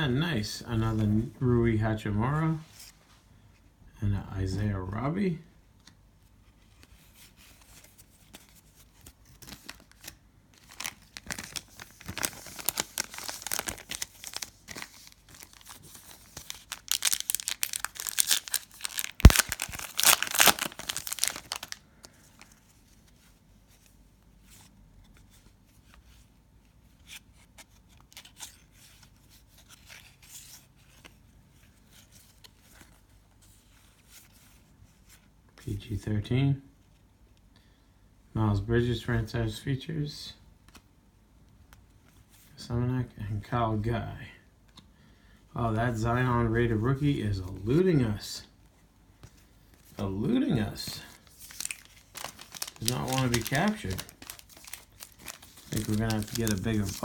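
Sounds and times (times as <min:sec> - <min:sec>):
cards rustling and ticking: 0:06.6 - 0:23.3, 0:49.2 - 0:57.0
wrapper tearing and crinkling: 0:09.3 - 0:21.8, 0:50.8 - 0:57.0
wrapper snapping: 0:09.4 - 0:21.8, 0:51.1 - 0:57.0.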